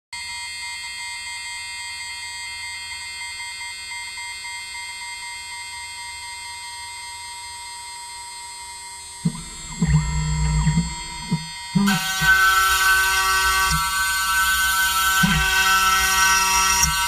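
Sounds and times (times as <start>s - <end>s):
high-pitched electrical whine: 2.5s - 17.0s
low hum: 9.2s - 17.0s.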